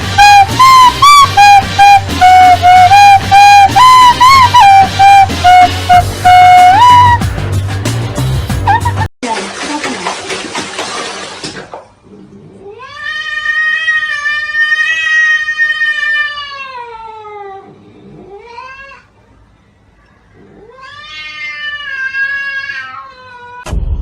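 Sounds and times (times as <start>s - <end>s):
cat yowling: 12.6s - 19.1s, 20.4s - 23.7s.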